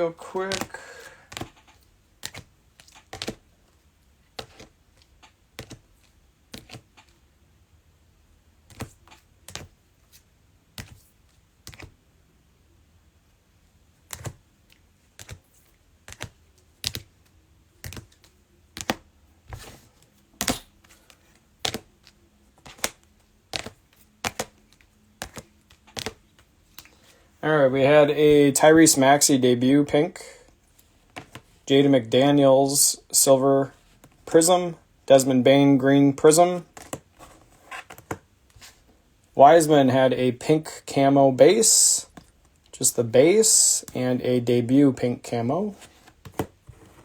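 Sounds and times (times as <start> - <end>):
cards tapping on tabletop: 0.4 - 1.6, 21.6 - 21.8, 22.6 - 24.5, 25.2 - 26.2.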